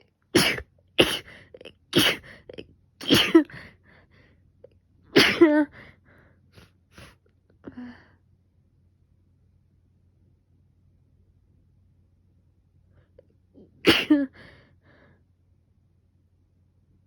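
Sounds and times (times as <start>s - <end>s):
person sneezing: 0.4s - 3.6s, 5.2s - 5.7s, 13.6s - 14.4s.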